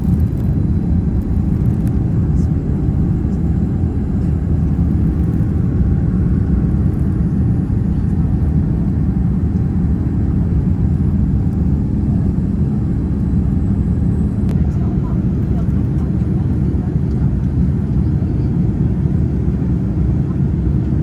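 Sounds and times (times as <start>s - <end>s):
aircraft cabin engine rumble: 0.0s - 21.0s.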